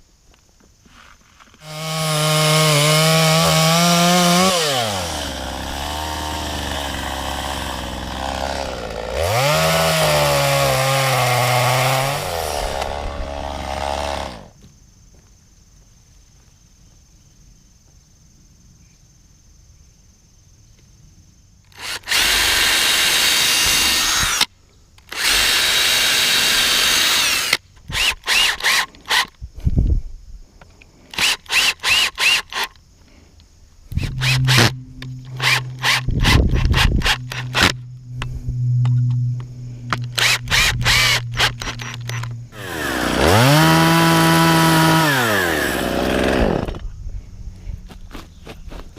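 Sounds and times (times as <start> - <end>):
power drill running: 21.8 - 24.5, 25.1 - 29.2, 31.2 - 32.6, 34.0 - 37.8, 39.9 - 46.8
low steady hum: 33.5 - 45.6.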